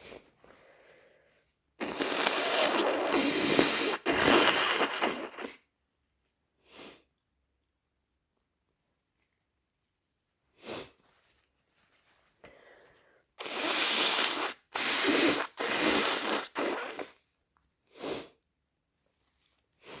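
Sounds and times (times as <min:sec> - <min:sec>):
sniff: 0:00.0 - 0:05.6, 0:06.6 - 0:07.2, 0:10.6 - 0:11.2, 0:12.4 - 0:17.2, 0:17.9 - 0:18.5, 0:19.8 - 0:20.0
person sneezing: 0:01.8 - 0:05.6, 0:13.4 - 0:17.2.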